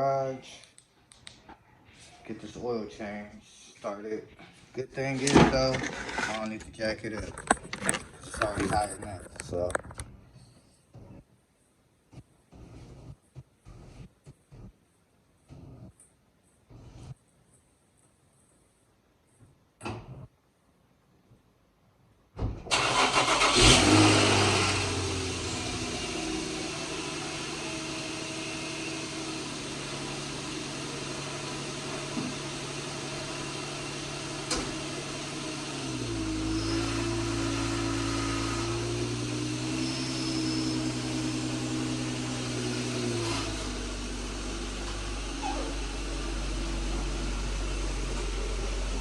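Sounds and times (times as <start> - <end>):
car engine starting and idling: 22.7 - 49.0.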